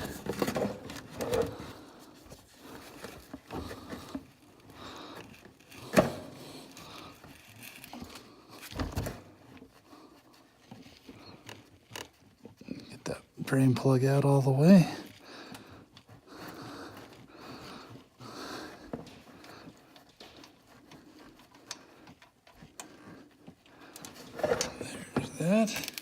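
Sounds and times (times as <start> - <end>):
light clicks and taps of tools: 18.9 - 26.0.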